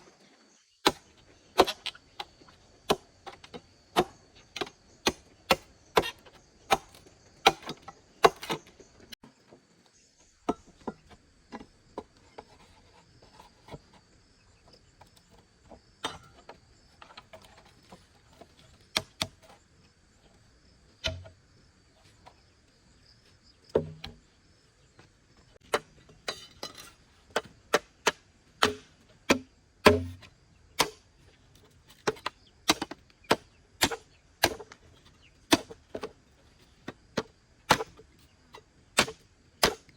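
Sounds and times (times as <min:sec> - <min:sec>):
blade chopping bamboo: 0:00.8 - 0:02.0, 0:02.9 - 0:08.7, 0:21.0 - 0:21.3, 0:27.3 - 0:31.1, 0:31.9 - 0:34.8, 0:35.5 - 0:36.1, 0:36.9 - 0:38.0, 0:39.0 - 0:39.9.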